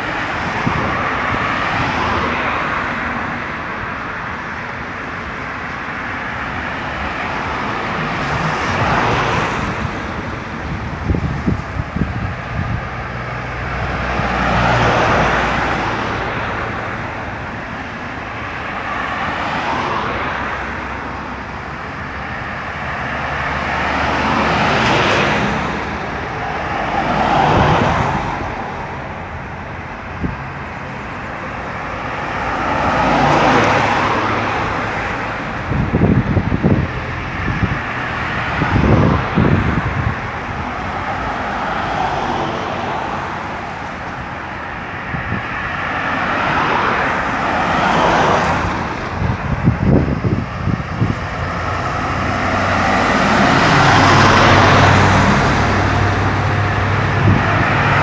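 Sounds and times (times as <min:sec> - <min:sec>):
cars passing on highway: 0:00.0 - 0:58.0.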